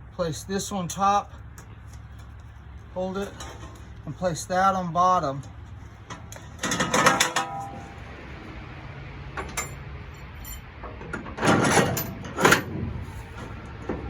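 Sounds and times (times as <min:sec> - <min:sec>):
low steady hum: 0:00.0 - 0:14.0
metal clunking scrapes: 0:03.2 - 0:04.0, 0:05.6 - 0:08.2, 0:09.4 - 0:14.0.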